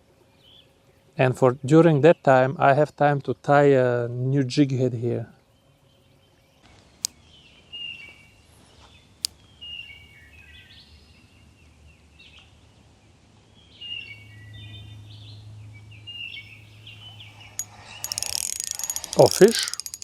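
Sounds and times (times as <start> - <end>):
sharp click: 17.2 - 20.0.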